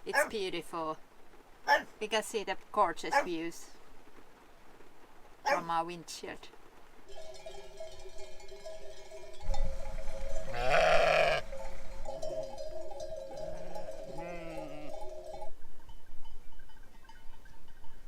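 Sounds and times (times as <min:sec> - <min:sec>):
bells ringing: 0:07.1 - 0:18.0
sheep bleating: 0:10.5 - 0:11.5, 0:13.4 - 0:15.1.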